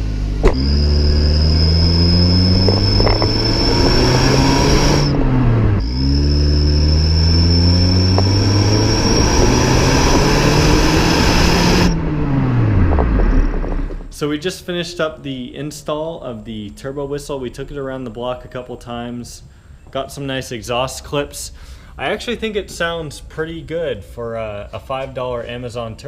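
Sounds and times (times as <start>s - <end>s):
exhaust whistle: 0.0s - 12.9s
car engine revving: 0.0s - 14.1s.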